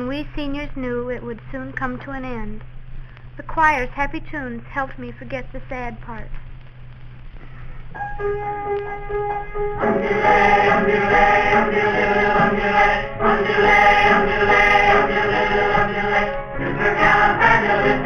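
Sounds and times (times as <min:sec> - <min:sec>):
choir singing together: 0:09.8 - 0:18.0.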